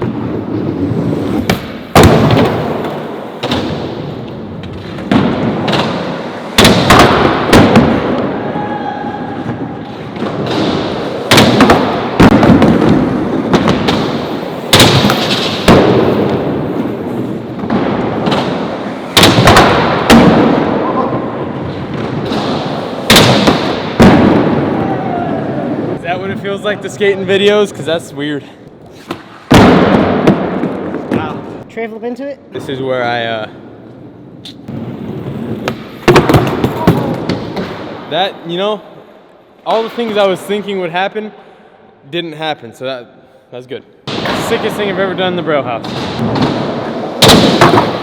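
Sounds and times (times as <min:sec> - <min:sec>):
skateboard wheels rumbling: 0:00.0 - 0:03.4.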